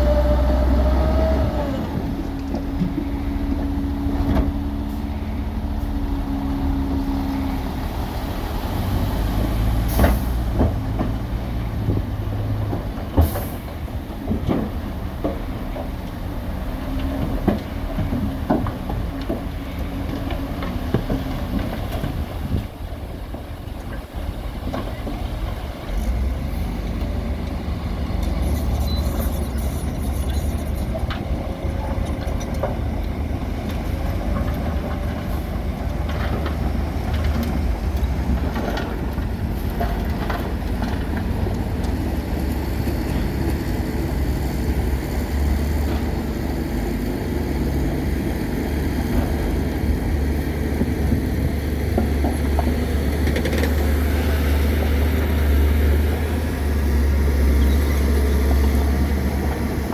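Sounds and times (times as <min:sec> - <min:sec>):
heavy diesel machinery engine drone: 0:00.0 - 0:59.9.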